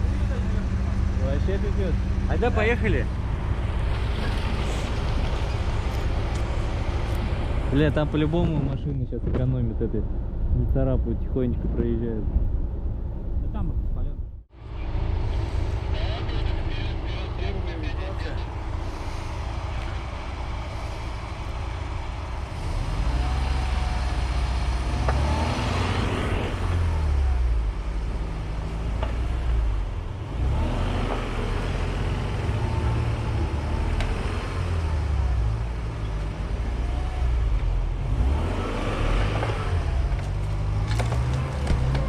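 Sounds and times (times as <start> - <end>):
engine revving under load: 15.1 - 42.0.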